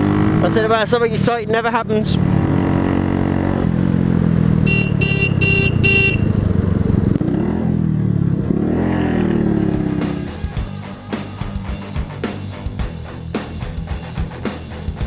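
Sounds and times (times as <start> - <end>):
motorcycle engine running: 0.0 - 15.0
horn toots: 4.6 - 6.5
guitar music: 9.5 - 15.0.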